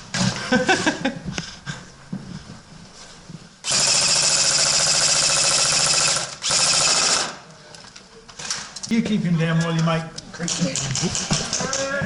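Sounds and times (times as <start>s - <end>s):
airsoft gun firing full auto: 3.6s - 7.4s.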